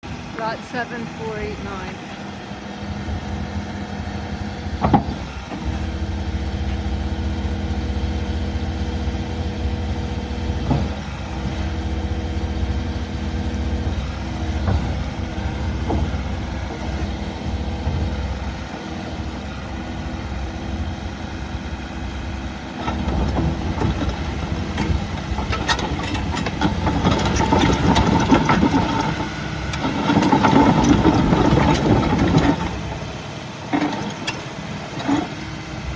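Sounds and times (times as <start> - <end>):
diesel engine idling: 0.0 - 35.9.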